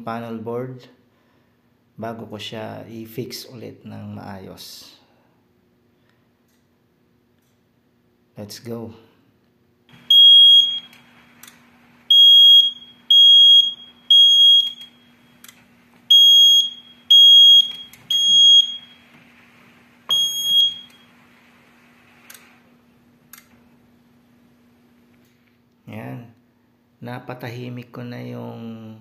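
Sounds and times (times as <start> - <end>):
steady low hum: 0.0 - 29.0
high-pitched alarm panel beeps: 10.0 - 11.1, 12.1 - 19.1, 20.1 - 21.1
clicks: 10.8 - 11.7, 14.7 - 16.1, 17.6 - 23.7.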